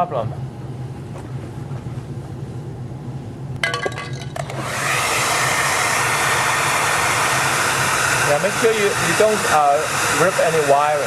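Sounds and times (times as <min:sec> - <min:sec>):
low steady hum: 0:00.0 - 0:04.8
hair dryer blowing air: 0:04.4 - 0:11.0.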